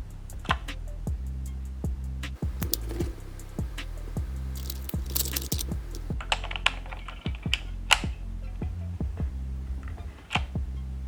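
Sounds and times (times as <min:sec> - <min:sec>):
background music with steady beat: 0:00.0 - 0:11.0.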